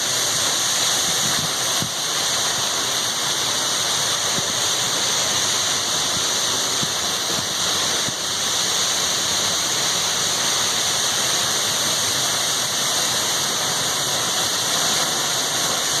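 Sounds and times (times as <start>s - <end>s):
waterfall rushing: 0.0s - 16.0s.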